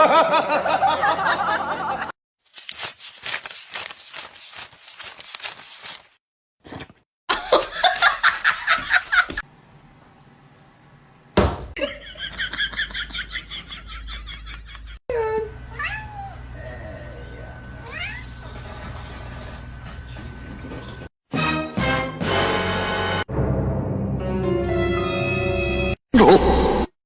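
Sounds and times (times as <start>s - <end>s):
people laughing and snickering: 0.0s - 2.1s, 7.3s - 9.4s
sharp knock: 11.4s - 11.8s.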